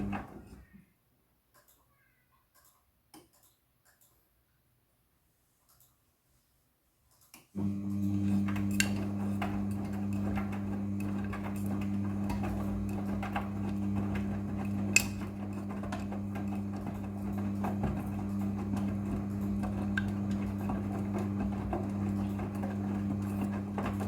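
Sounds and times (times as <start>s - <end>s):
washing machine motor hum: 0.0s - 0.7s, 7.6s - 24.0s
light clicks and ticks: 1.5s - 4.3s.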